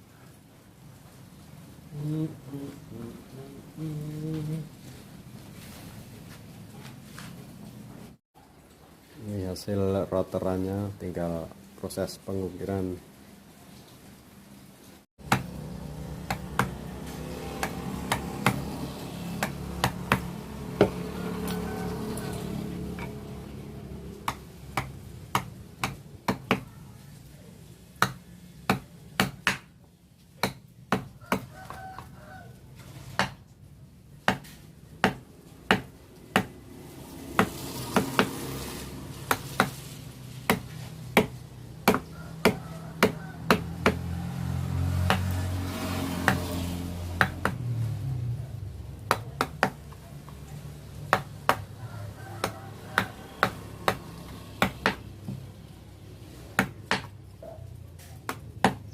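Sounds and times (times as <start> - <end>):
mallet tapping chisel into wood: 24.3 - 26.6, 34.3 - 36.5, 40.5 - 44.0, 54.6 - 55.4.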